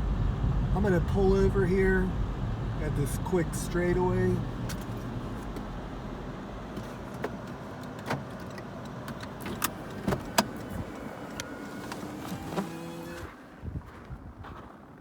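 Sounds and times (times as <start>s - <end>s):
car engine and road noise: 0.0s - 15.0s
clicks and knocks in car cabin: 4.6s - 5.8s, 6.6s - 13.2s.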